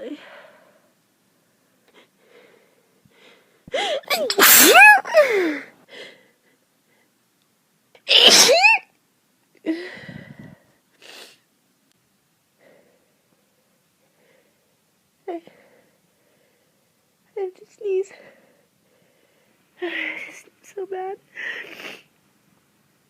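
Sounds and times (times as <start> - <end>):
faint breaths: 0.0 - 4.1, 5.2 - 7.2, 9.6 - 11.4, 12.5 - 17.1, 18.0 - 20.5
person sneezing: 3.8 - 5.5, 8.1 - 8.8.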